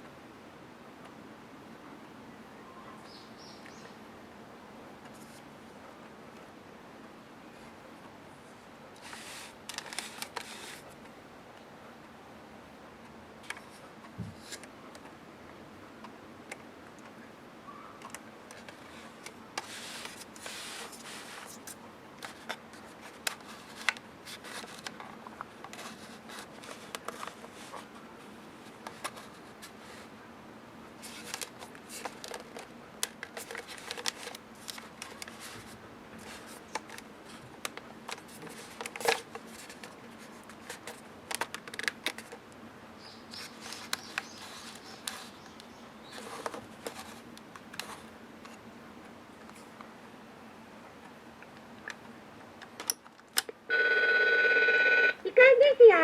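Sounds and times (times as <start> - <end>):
handling plastic alarm clock: 9.0 - 11.0, 18.0 - 30.1, 31.0 - 42.4, 43.3 - 48.6.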